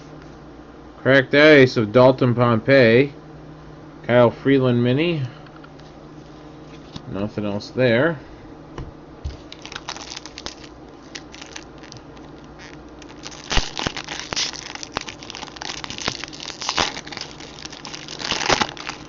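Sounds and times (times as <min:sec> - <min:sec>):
wrapper crinkling and tearing: 0:09.4 - 0:19.0.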